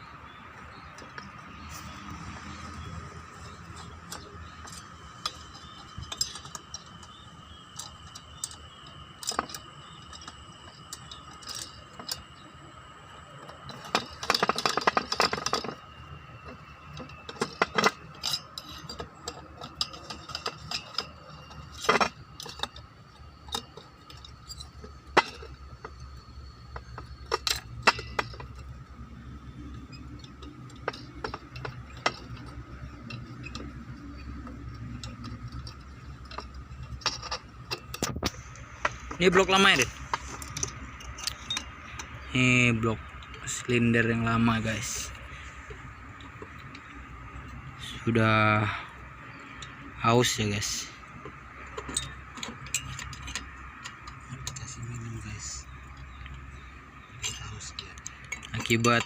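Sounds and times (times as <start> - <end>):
metal tools clinking and tapping: 0.1 - 59.0.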